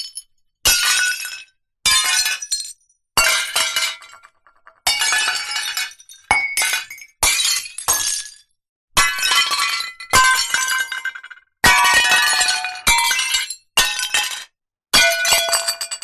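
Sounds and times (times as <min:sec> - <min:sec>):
crockery smashing: 0:00.1 - 0:08.4.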